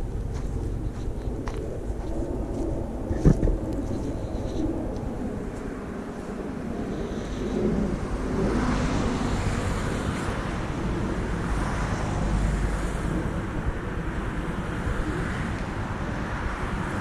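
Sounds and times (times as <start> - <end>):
diesel engine running under load: 0.0 - 5.2
wind buffeting microphone: 0.0 - 17.0.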